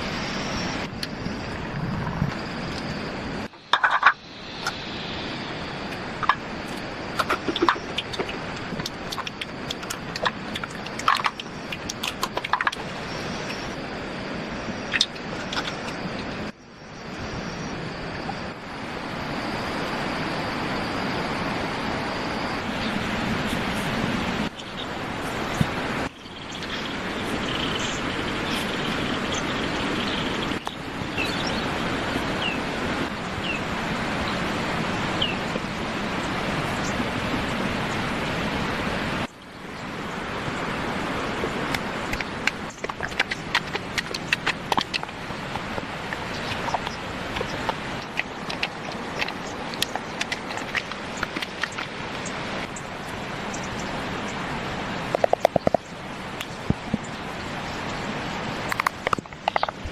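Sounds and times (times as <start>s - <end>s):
rushing outdoor noise: 0.0s - 59.9s.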